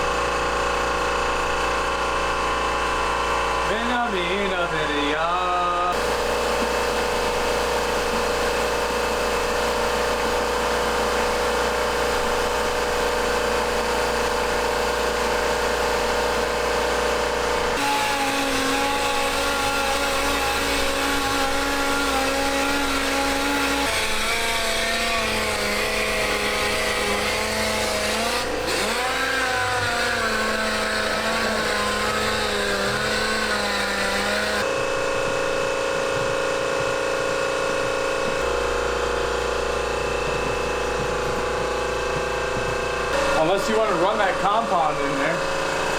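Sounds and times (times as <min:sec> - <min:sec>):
power tool motor sanding: 0:05.9 - 0:35.2.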